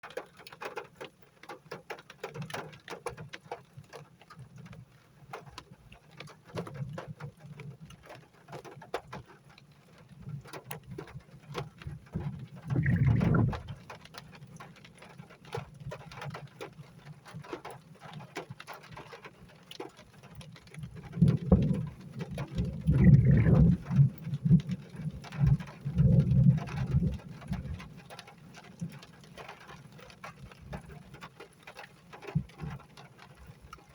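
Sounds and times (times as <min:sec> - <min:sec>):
rain pattering: 0:00.0 - 0:33.9
low rumble on microphone: 0:11.6 - 0:13.9, 0:20.8 - 0:27.9.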